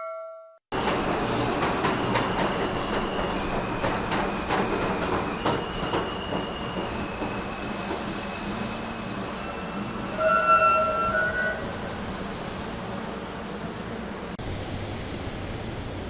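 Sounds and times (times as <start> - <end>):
train running on rails: 0.7 - 16.0
wheel squeal: 5.0 - 11.8
train horn: 10.2 - 11.8.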